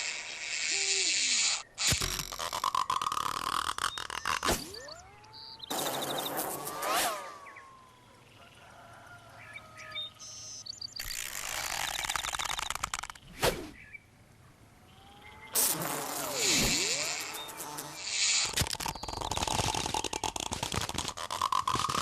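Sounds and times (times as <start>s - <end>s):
rapid fluttering buzz: 0.0s - 8.1s, 11.0s - 13.7s, 15.5s - 22.0s
cartoon swooping glide: 4.0s - 8.0s, 15.6s - 18.5s.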